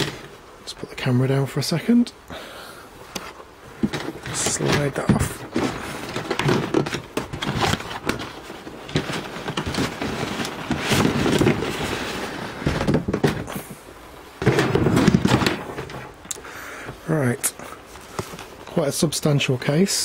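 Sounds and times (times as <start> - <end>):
cardboard scraping and rustling: 0.0 - 0.4, 3.1 - 13.8, 14.4 - 16.2.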